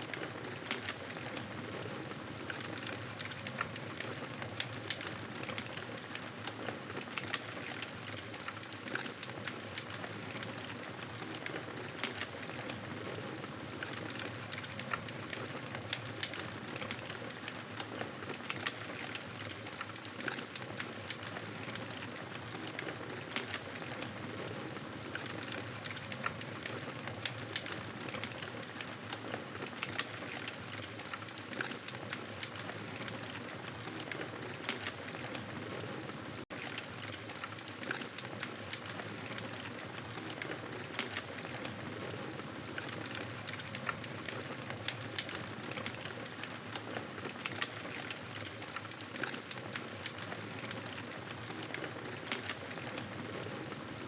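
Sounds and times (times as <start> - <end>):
campfire crackling and popping: 0.1 - 35.6, 36.5 - 53.8.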